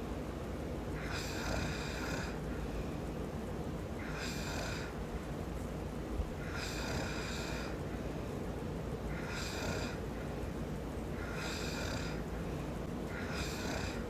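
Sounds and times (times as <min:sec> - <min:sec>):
low background rumble: 0:00.0 - 0:14.0
man snoring: 0:01.0 - 0:02.4, 0:04.0 - 0:05.0, 0:06.4 - 0:07.8, 0:09.1 - 0:10.1, 0:11.2 - 0:12.3, 0:13.1 - 0:14.0.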